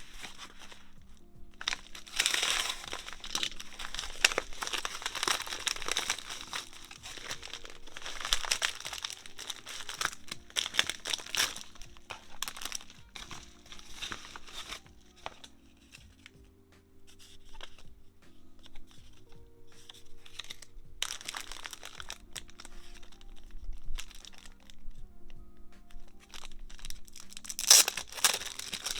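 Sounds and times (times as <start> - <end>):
packaging crinkling: 0.0 - 16.4, 17.0 - 17.9, 18.5 - 28.9
soft background music: 0.0 - 28.9.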